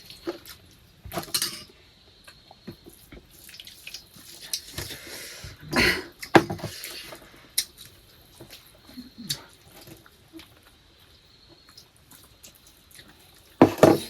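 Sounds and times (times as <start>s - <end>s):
dishes and cutlery clinking: 1.2s - 1.7s.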